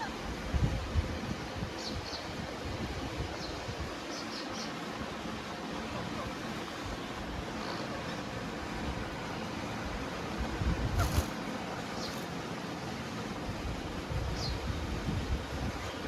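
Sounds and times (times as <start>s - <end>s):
wind on microphone: 0.0s - 4.1s, 9.9s - 11.4s, 13.4s - 16.0s.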